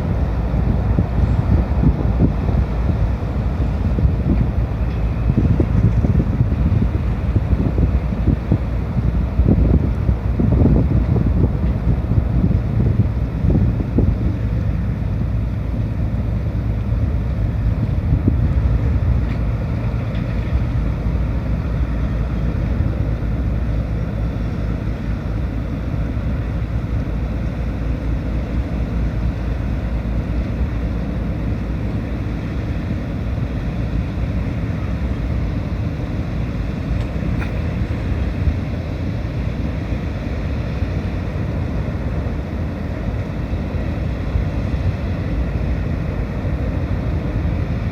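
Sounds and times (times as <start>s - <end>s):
ship engines rumbling: 0.0s - 47.9s
wind buffeting microphone: 0.0s - 47.9s.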